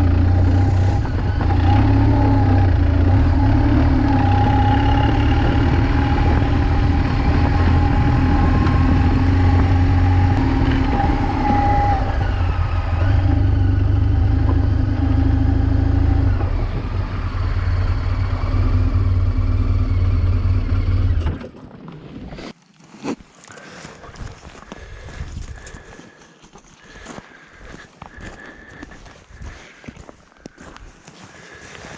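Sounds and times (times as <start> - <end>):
motorcycle engine running: 0.0 - 21.3.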